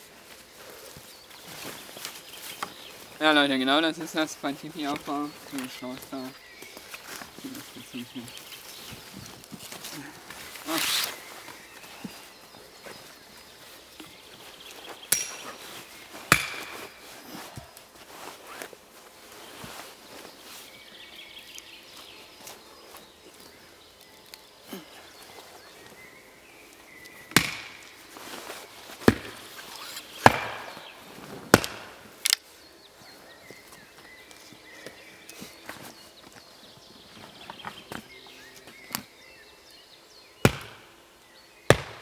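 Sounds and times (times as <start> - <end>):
sharp blows on wood: 16.3 - 17.1, 30.2 - 32.3, 40.5 - 41.0, 41.7 - 42.0.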